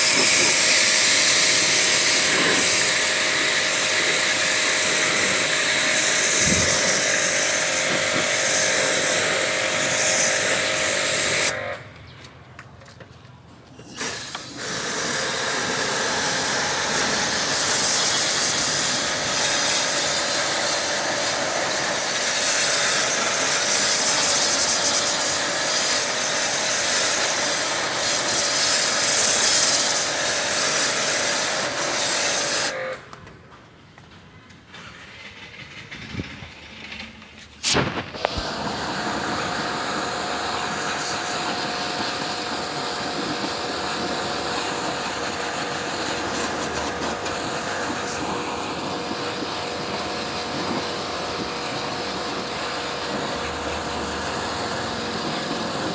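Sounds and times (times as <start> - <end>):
pressure washer water spray hiss: 0.0 - 11.8, 13.8 - 33.0, 37.6 - 55.9
motor hum: 38.0 - 55.9.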